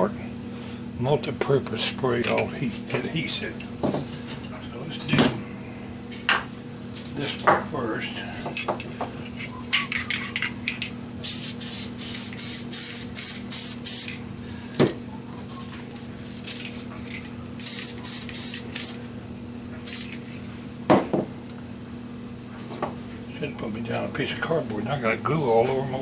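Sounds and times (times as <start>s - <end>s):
aerosol can spraying bursts: 11.2s - 14.1s, 17.6s - 19.0s, 19.9s - 20.2s.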